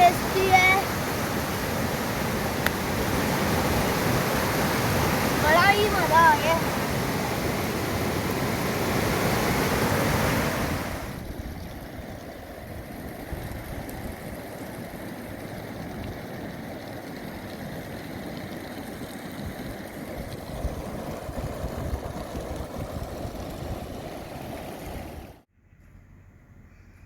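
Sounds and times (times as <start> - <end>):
fast mountain river rushing: 0.0 - 11.2.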